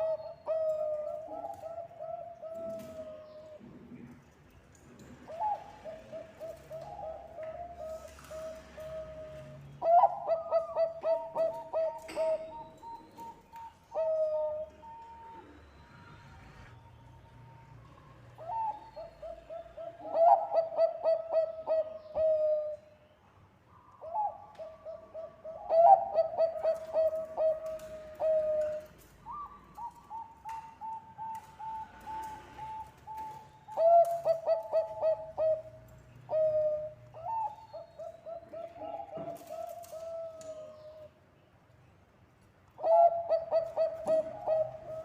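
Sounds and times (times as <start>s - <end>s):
dove cooing: 0.0s - 4.1s, 5.2s - 16.7s, 18.3s - 22.8s, 24.0s - 41.1s, 42.8s - 45.0s.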